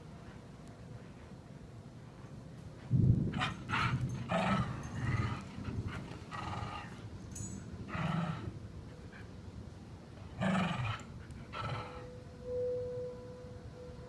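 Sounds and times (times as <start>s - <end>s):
tornado warning siren: 11.9s - 14.0s.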